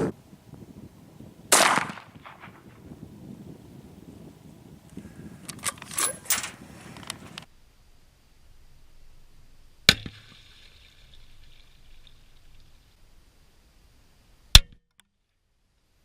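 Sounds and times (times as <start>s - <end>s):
rifle shot with ringing tail: 1.5s - 2.7s.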